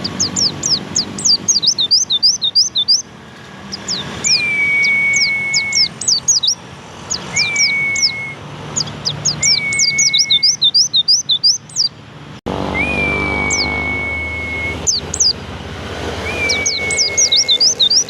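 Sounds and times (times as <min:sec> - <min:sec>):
bird chirping: 0:00.0 - 0:15.6, 0:16.2 - 0:18.0
steady whistled tone: 0:04.3 - 0:06.6, 0:07.2 - 0:08.4, 0:09.3 - 0:11.7, 0:12.7 - 0:15.4, 0:16.2 - 0:18.0.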